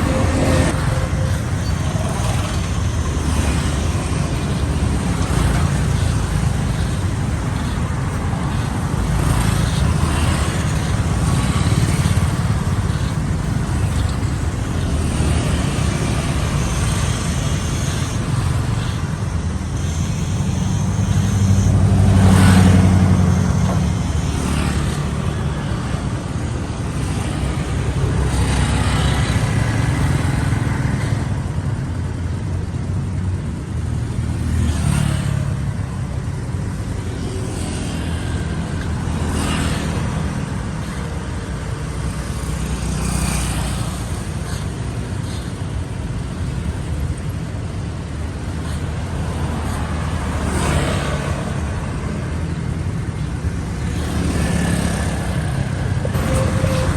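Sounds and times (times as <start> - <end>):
cars passing: 0.0 - 56.9
traffic rumble: 0.0 - 56.9.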